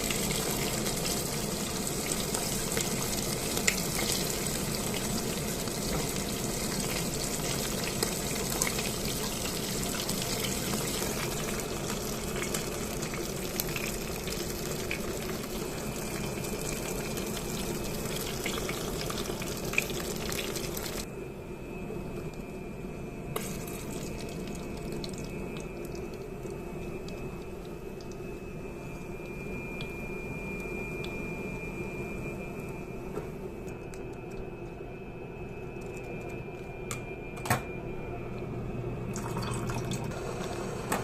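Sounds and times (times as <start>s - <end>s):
hot oil sizzling and crackling: 0.0s - 21.1s, 23.4s - 30.0s.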